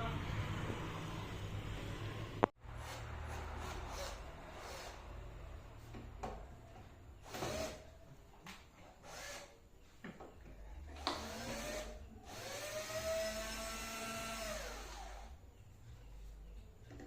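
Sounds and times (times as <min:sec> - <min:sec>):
electric drill motor whining: 0:09.0 - 0:09.5, 0:11.0 - 0:15.4.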